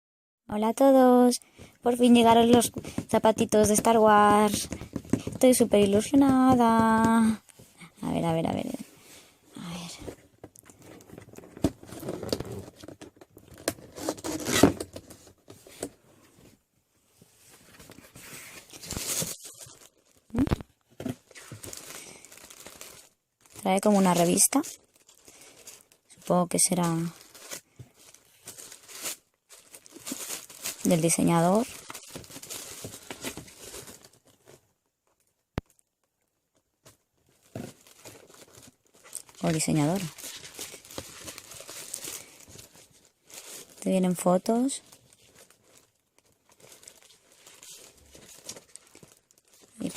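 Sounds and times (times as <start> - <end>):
paper and cardboard rustling: 1.9 - 7.7, 17.2 - 25.9, 26.5 - 34.6, 36.8 - 43.9, 44.8 - 49.9
paper rustling: 17.4 - 23.0.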